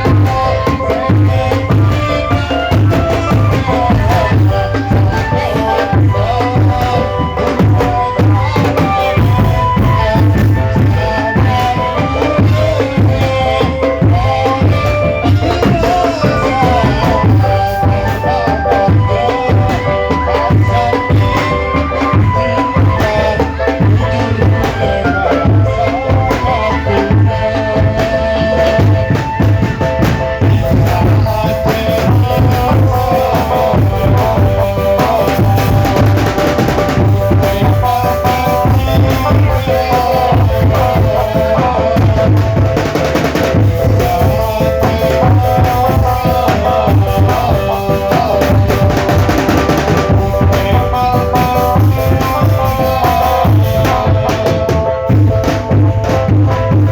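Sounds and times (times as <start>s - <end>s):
bass drum beats: 0.0s - 56.9s
continuous melody: 0.0s - 56.9s
snare drums: 0.0s - 56.9s.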